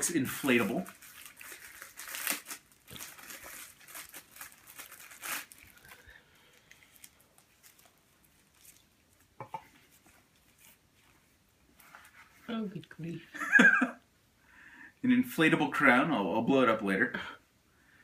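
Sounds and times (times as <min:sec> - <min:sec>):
packaging crinkling and tearing: 0:00.0 - 0:09.4.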